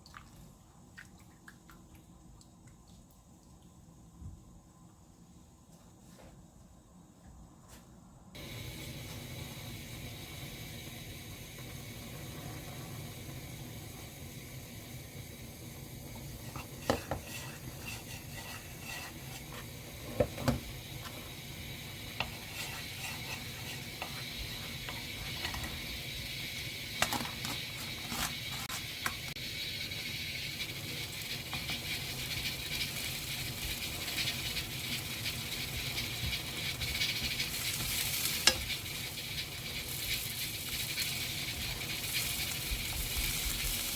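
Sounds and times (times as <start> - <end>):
potatoes stir-frying hiss: 8.4 - 43.9
spatula scraping and knocking pan: 16.3 - 21.3, 22.1 - 25.8, 27.0 - 29.3.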